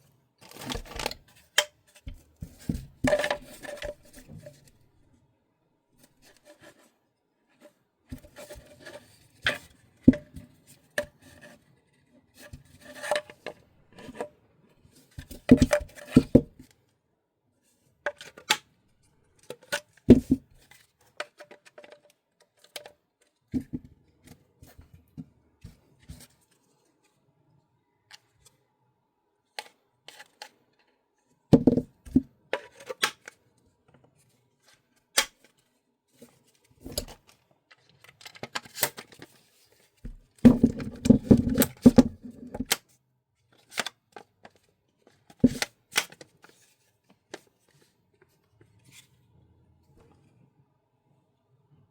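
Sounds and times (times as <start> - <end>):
plastic clatter: 40.4 - 42.8.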